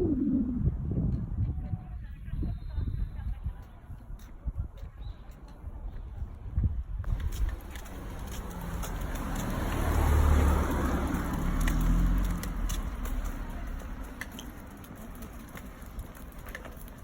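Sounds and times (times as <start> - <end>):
car passing by: 7.1 - 17.0.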